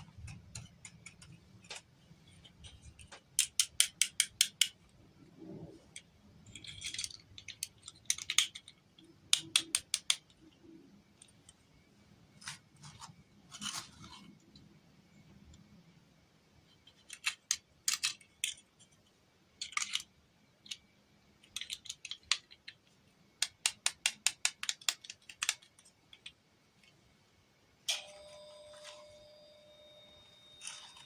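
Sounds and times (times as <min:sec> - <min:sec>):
plastic toy pieces clicking: 0:00.0 - 0:05.0, 0:05.9 - 0:11.6, 0:16.7 - 0:27.0
ringing tone: 0:27.9 - 0:31.0.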